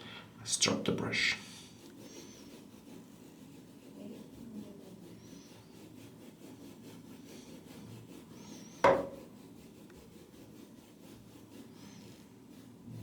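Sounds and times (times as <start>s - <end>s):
brush rubbing on towel: 0.5s - 13.0s
sharp knock: 8.8s - 9.2s.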